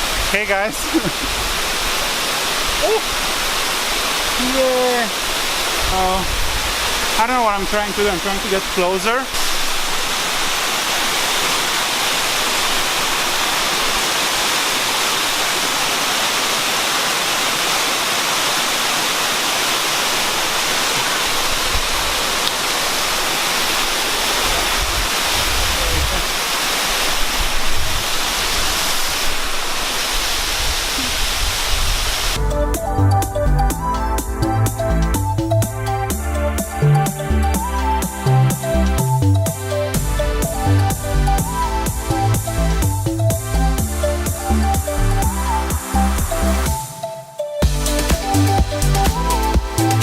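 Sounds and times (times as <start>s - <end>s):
waterfall rushing: 0.0s - 32.6s, 33.3s - 50.0s
low rumbles: 32.4s - 46.8s
electronic music: 32.4s - 50.0s.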